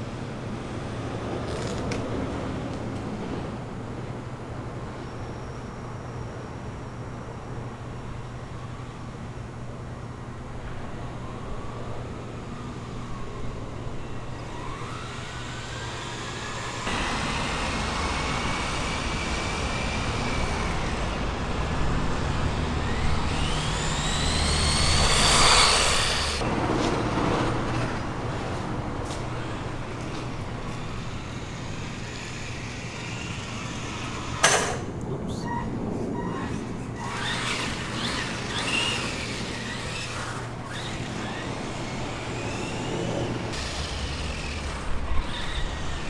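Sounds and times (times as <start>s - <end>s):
wind and road noise: 0.0s - 46.0s
toy car motor whining: 14.1s - 26.4s, 29.3s - 34.8s, 36.2s - 46.0s.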